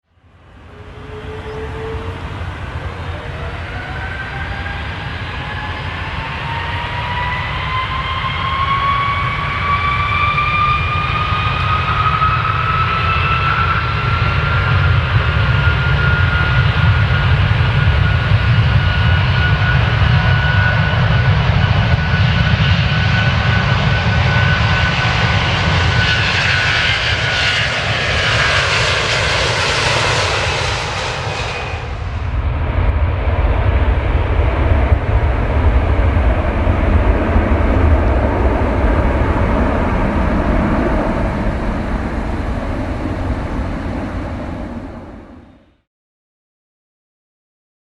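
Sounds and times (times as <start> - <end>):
airplane engine whine: 0.0 - 45.9
deep engine rumble: 26.8 - 45.6.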